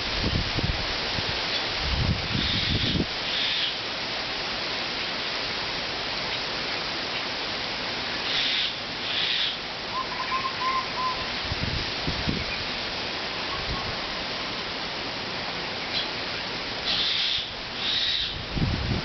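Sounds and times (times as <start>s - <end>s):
wind buffeting microphone: 0.0s - 3.1s, 11.4s - 12.8s, 18.3s - 19.0s
wind blowing: 0.0s - 3.3s, 9.6s - 19.0s.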